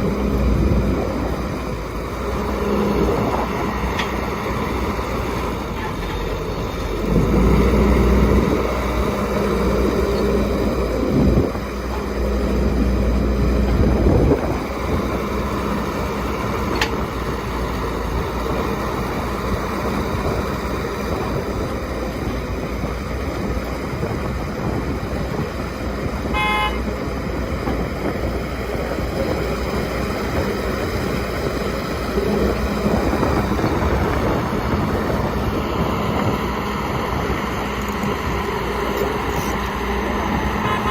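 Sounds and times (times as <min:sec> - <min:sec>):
diesel engines of heavy machinery: 0:00.0 - 0:40.9
short horn toot: 0:26.3 - 0:26.9.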